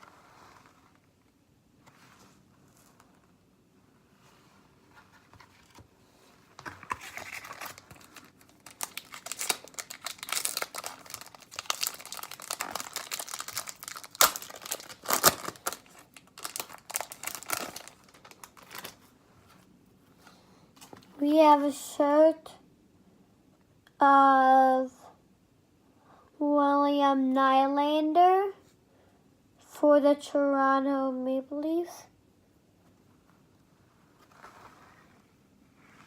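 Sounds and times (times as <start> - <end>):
wrapper crinkling and tearing: 6.6 - 19.1.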